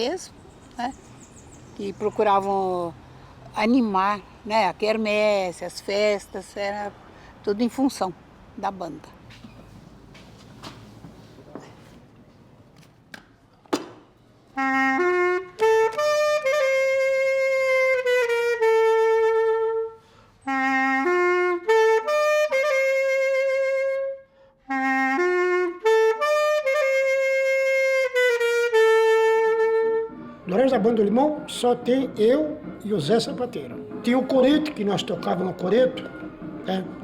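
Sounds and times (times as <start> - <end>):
wind instrument melody: 14.5 - 37.0.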